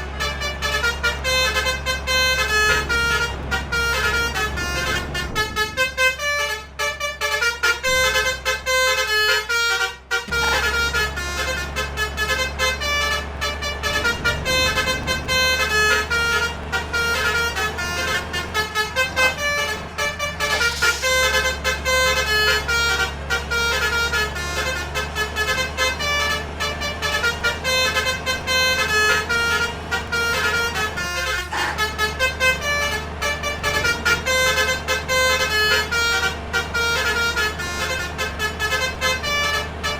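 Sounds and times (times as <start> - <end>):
musical air horn playing a tune: 0.2 - 39.9.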